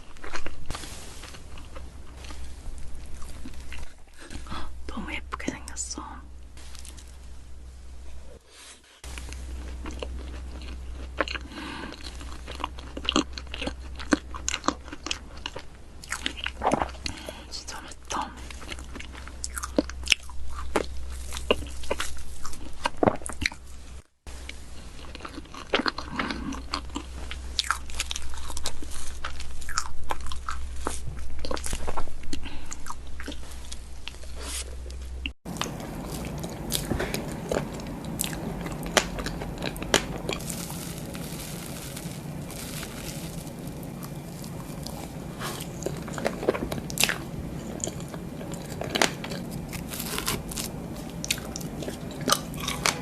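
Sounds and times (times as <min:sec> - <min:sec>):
wet chewing: 0:00.0 - 0:04.8, 0:09.0 - 0:23.7, 0:24.4 - 0:53.0
cake crunching: 0:09.0 - 0:17.4, 0:24.4 - 0:53.0.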